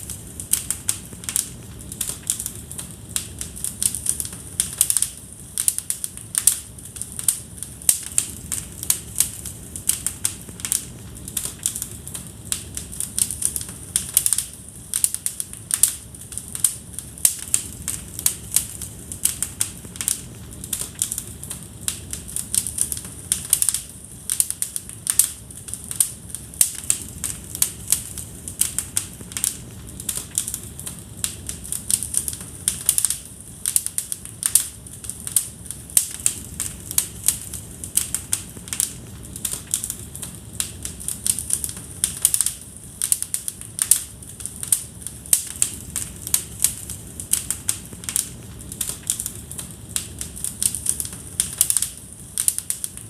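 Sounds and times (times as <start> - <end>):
low rumble of flames: 0.0 - 53.0
wood fire crackling: 0.0 - 53.0.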